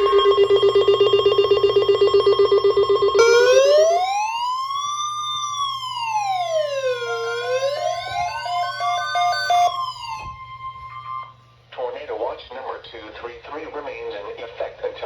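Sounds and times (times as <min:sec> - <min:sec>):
pulsing bell-like ringing tone: 0:00.0 - 0:04.2
steady electronic tone: 0:00.0 - 0:11.5
wailing siren: 0:00.0 - 0:11.5.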